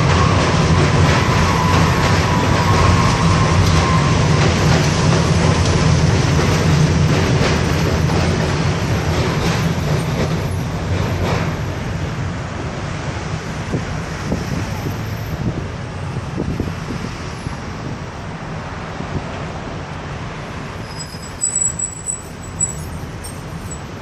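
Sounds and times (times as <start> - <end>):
high wheel squeal: 0.0 - 4.5, 20.7 - 24.0
train wheels rumbling on track: 0.0 - 24.0.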